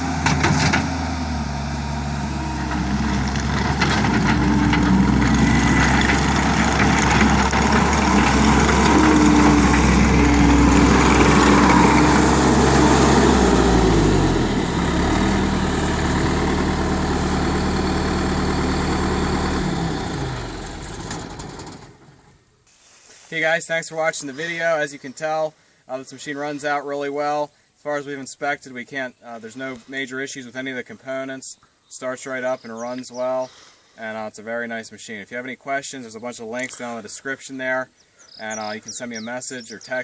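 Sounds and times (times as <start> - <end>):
skid steer diesel engine: 0.0 - 22.4
hissing rattling working noise: 14.8 - 22.2.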